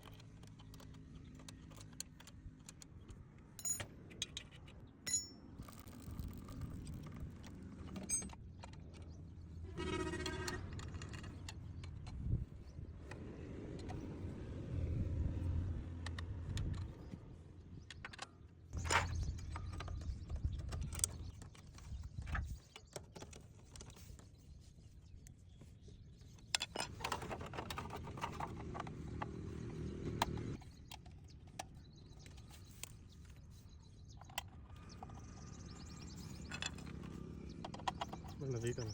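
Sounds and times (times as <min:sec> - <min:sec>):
drive chain clattering: 0:03.6 - 0:03.9.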